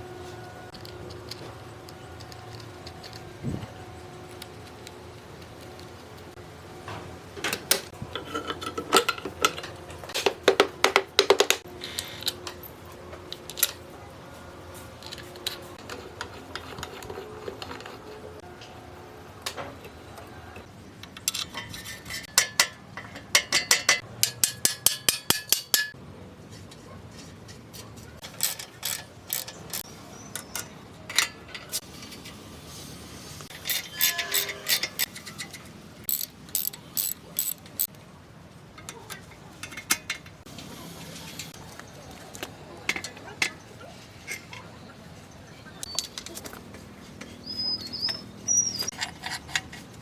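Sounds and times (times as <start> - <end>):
ratchet wrench clicking: 28.2 - 29.8, 33.5 - 35.1, 36.1 - 37.9.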